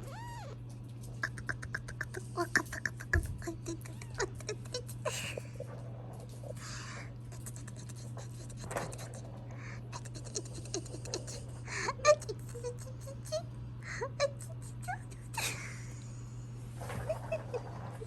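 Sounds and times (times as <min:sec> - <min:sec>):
kittens squeaking: 0:00.0 - 0:00.6, 0:01.2 - 0:05.4
kittens scratching on bedding: 0:02.0 - 0:11.3.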